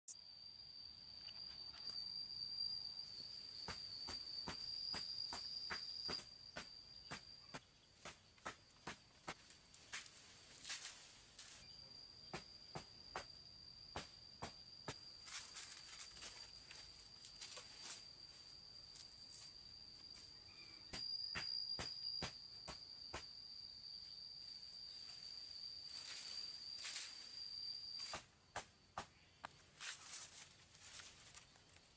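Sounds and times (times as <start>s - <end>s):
high-pitched insect trill: 0.1s - 31.9s
footsteps: 8.0s - 11.6s
footsteps crunching on forest litter: 9.2s - 11.6s, 15.2s - 18.1s, 25.9s - 27.3s, 29.5s - 31.9s.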